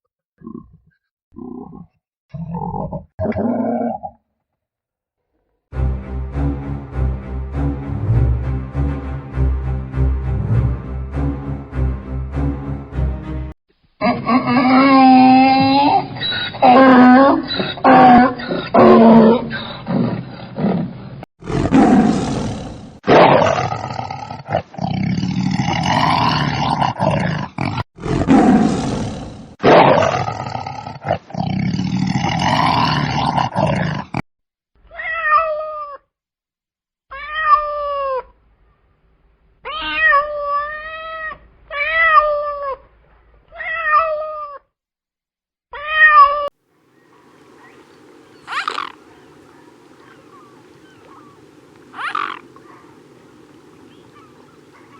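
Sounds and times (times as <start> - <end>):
harsh animal calls: 14.0 - 34.2, 47.0 - 54.9
cat meowing: 34.9 - 36.0, 37.1 - 38.2, 39.7 - 42.8, 43.5 - 44.6, 45.8 - 46.5, 48.5 - 49.0, 50.3 - 52.8.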